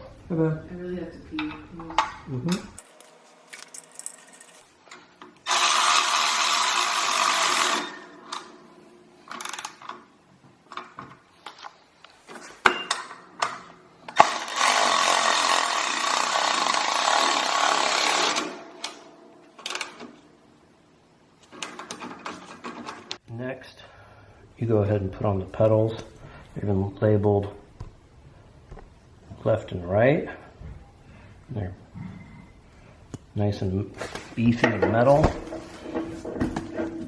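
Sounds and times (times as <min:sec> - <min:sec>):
metal parts clicking and handled: 0:02.7 - 0:05.0
power drill driving bolts: 0:05.4 - 0:08.5, 0:14.1 - 0:18.6.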